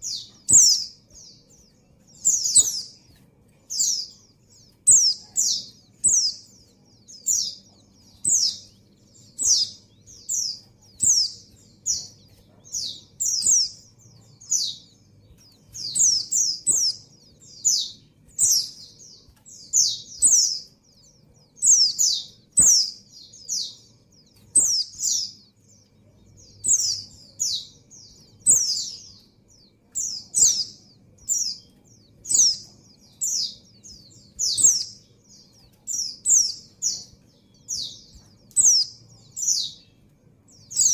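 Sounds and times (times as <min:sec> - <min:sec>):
bird high chirps: 0:00.0 - 0:40.9.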